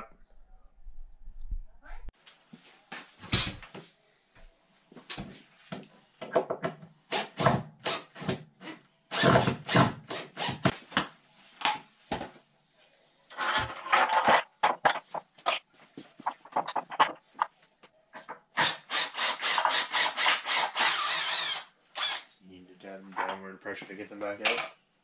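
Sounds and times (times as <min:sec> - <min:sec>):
wood knocking and scraping on wood: 0:13.4 - 0:17.6.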